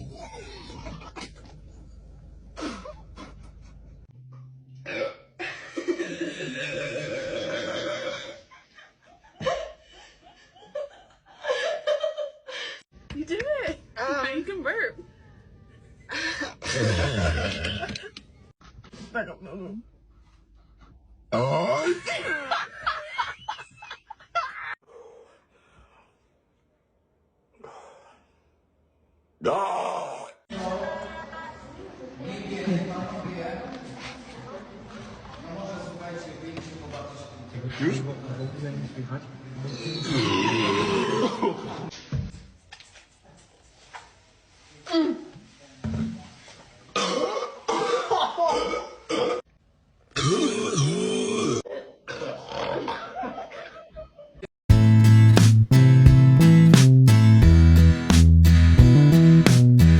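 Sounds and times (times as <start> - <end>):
person burping: 4.8 - 5.4, 6.0 - 8.5, 16.6 - 18.1, 21.3 - 22.3, 39.7 - 41.6, 47.0 - 49.5, 50.1 - 53.2.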